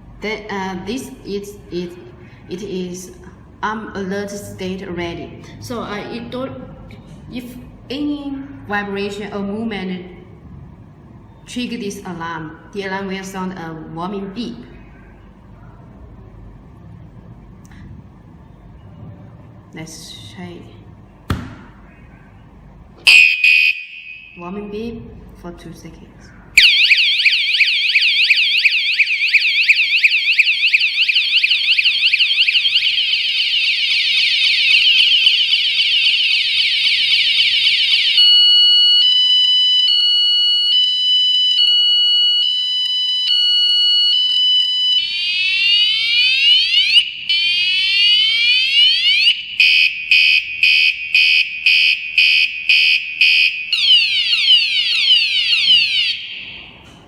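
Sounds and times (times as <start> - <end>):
car alarm siren: 23.0 - 24.4, 26.6 - 56.8.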